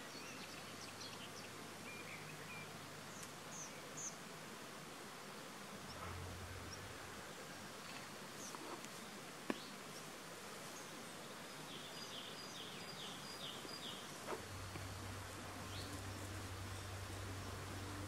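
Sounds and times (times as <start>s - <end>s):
bird singing: 0.0s - 4.2s, 11.7s - 17.9s.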